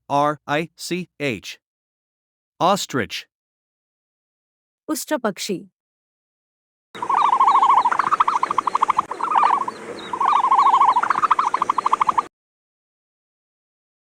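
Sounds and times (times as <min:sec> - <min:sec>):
animal rapid pulsing trill: 0:07.0 - 0:12.3.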